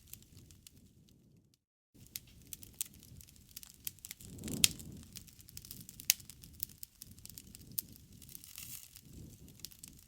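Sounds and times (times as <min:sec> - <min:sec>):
campfire crackling and popping: 0:00.0 - 0:10.0
soft rush of flame: 0:02.0 - 0:10.0.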